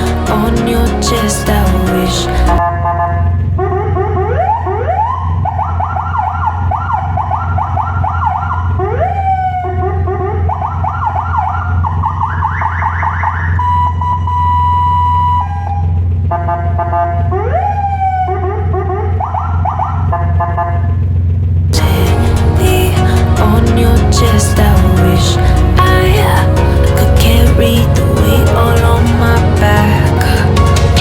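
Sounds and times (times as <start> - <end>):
electronic vehicle siren: 2.6 - 21.0.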